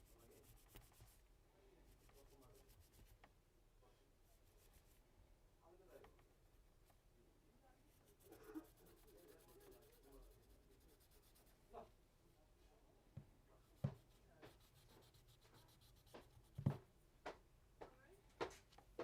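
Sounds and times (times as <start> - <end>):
scraping and rubbing on phone: 0.0 - 1.3, 1.9 - 3.3, 4.3 - 5.0, 7.9 - 11.9, 13.7 - 16.8.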